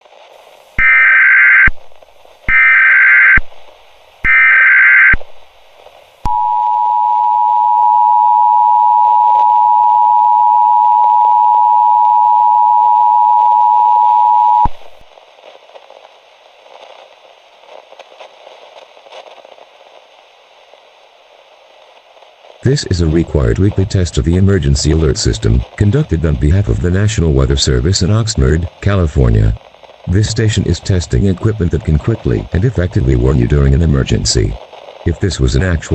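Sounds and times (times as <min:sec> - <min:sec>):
faint hiss: 0:00.0 - 0:07.0, 0:14.7 - 0:35.9
two-tone attention signal: 0:00.8 - 0:01.7, 0:02.5 - 0:03.4, 0:04.3 - 0:05.2, 0:06.3 - 0:14.7
digital header bursts: 0:00.8 - 0:01.8, 0:02.5 - 0:03.5, 0:04.2 - 0:05.2.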